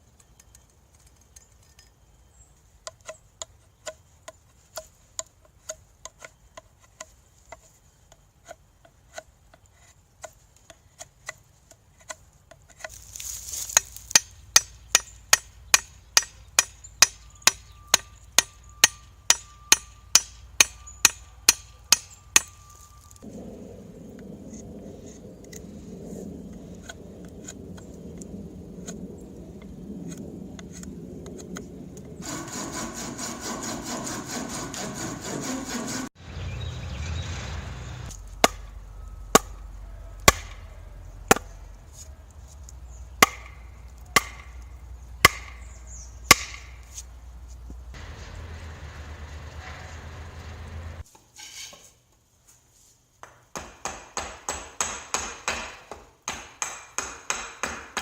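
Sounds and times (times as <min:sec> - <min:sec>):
steady scraping or sawing: 0:03.0 - 0:16.7, 0:30.0 - 0:36.2, 0:41.2 - 0:51.9.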